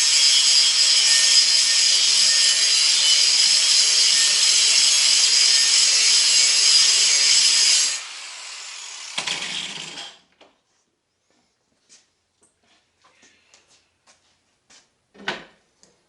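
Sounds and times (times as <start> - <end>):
power grinder grinding steel: 0.0 - 10.2.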